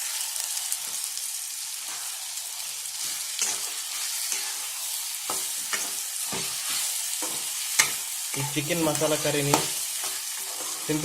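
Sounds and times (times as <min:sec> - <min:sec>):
food sizzling in a pan: 0:00.0 - 0:11.0
spoon scraping and knocking pan: 0:03.0 - 0:11.0.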